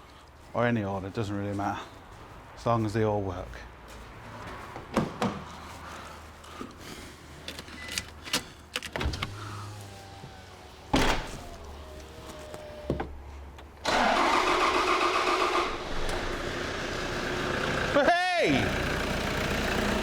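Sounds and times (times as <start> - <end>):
diesel engine starting and running: 7.3 - 20.0.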